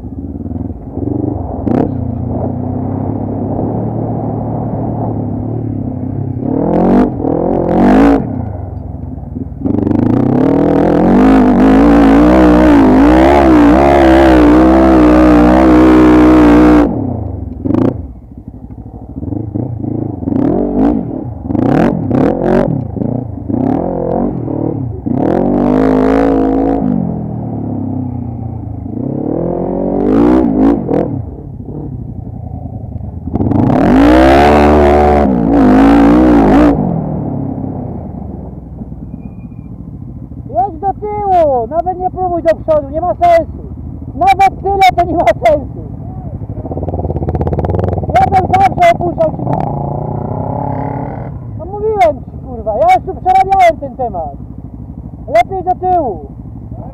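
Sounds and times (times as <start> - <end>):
engine revving: 0.0 - 8.8, 9.5 - 18.2, 19.1 - 38.4, 46.3 - 54.3.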